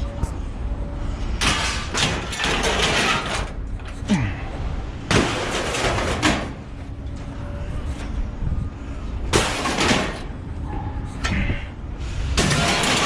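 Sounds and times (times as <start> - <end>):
scrap metal scraping and clattering: 1.4 - 3.6, 11.2 - 13.0
low rumble: 6.8 - 9.4.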